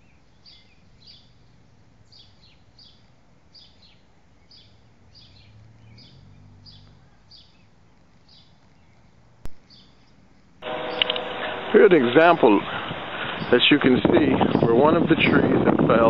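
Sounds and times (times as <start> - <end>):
bird chirping: 0.0 - 14.9
faint low hum: 0.0 - 16.0
outdoor background noise: 0.0 - 16.0
sharp click: 10.9 - 11.3.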